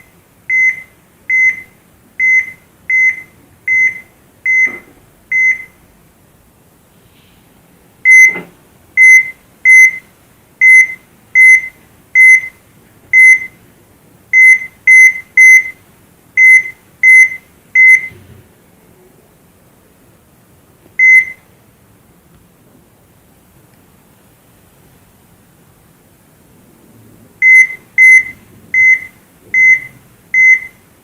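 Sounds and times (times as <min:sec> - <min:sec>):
heart monitor beeping: 0:00.0 - 0:05.8, 0:08.0 - 0:10.0, 0:10.6 - 0:13.6, 0:14.3 - 0:15.8, 0:16.4 - 0:18.2, 0:21.0 - 0:21.4, 0:27.4 - 0:30.8.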